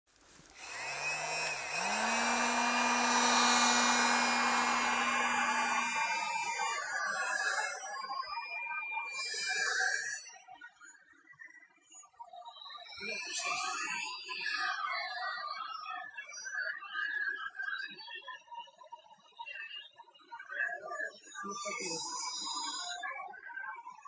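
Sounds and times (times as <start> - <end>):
heat gun fan motor hum: 0.4 - 9.9.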